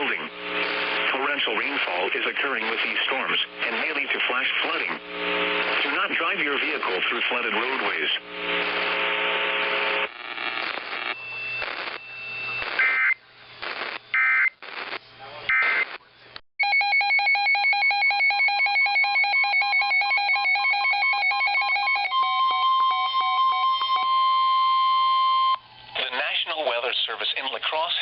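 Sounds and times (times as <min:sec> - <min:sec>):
radio static: 0:00.0 - 0:16.4, 0:26.0 - 0:28.0
steady single-pitch alarm tone: 0:16.6 - 0:25.6.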